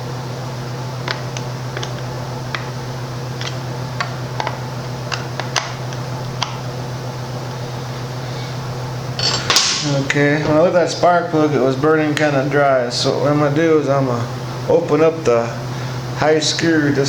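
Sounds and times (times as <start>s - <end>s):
steady low hum: 0.0s - 17.0s
tools clicking and tapping: 3.4s - 6.6s.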